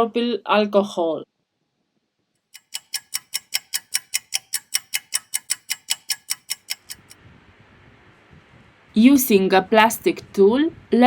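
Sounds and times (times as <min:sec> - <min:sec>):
rapid even ticking: 0:02.6 - 0:07.2.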